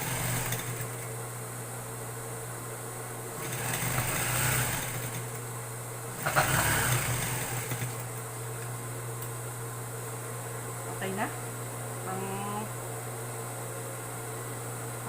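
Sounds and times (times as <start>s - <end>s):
sewing machine stitching: 0.0s - 1.0s, 3.4s - 5.3s, 6.2s - 8.1s.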